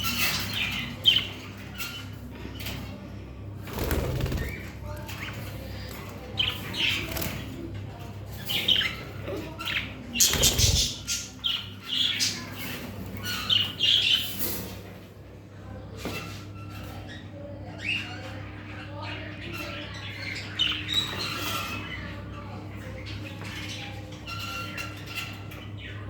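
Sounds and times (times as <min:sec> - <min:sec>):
budgerigars chirping and squawking: 0:00.0 - 0:02.9, 0:03.8 - 0:14.9, 0:16.7 - 0:26.0
wing flapping: 0:03.6 - 0:04.8, 0:10.2 - 0:11.2.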